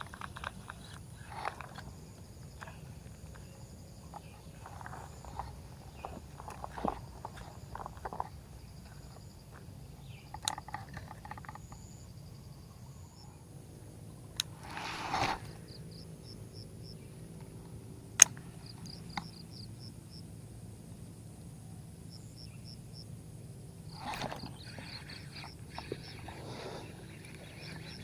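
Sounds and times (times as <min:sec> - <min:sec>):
insects chirping in pulses: 0:00.0 - 0:28.0
steady low hum: 0:00.0 - 0:28.0
sharp clicks: 0:18.2 - 0:19.4.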